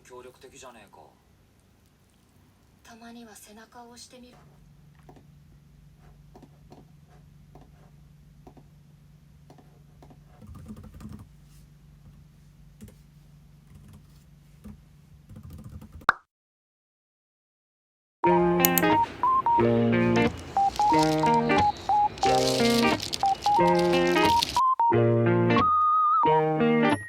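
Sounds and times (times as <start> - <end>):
keyboard key clicks: 18.6 - 19.2.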